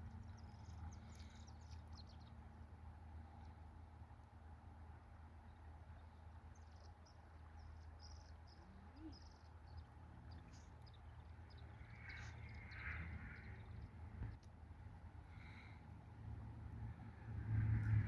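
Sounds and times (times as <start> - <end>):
high chirps of birds or insects: 5.5 - 14.0.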